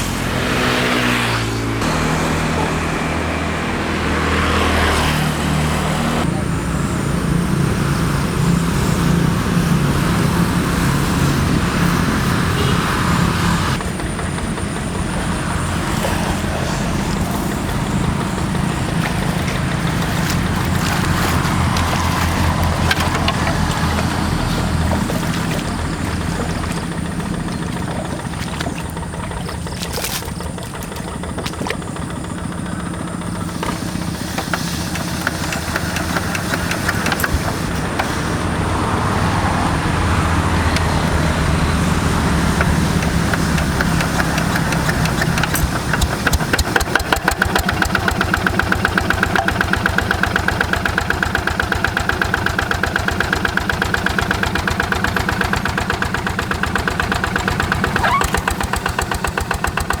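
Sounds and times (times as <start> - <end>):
diesel hand tractor engine running: 0.0 - 60.0.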